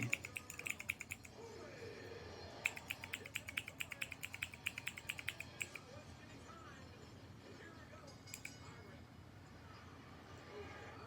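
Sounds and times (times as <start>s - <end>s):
keyboard switches clicking rapidly: 0.0s - 1.4s, 2.7s - 5.8s.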